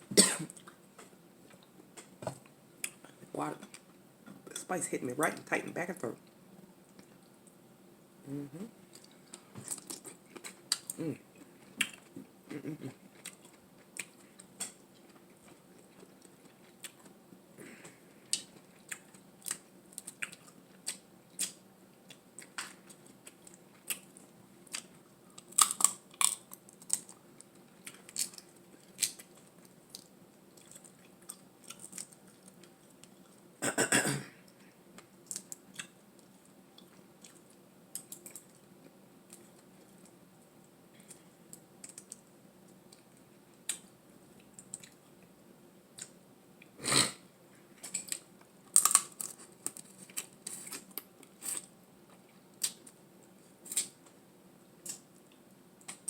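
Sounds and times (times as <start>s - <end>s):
wet chewing and mouth clicks: 27.8s - 33.4s.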